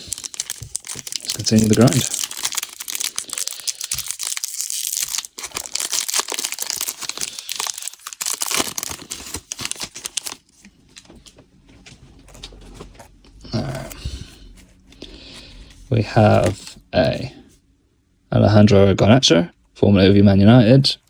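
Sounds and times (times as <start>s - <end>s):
wrapper tearing and crinkling: 0.0s - 10.5s.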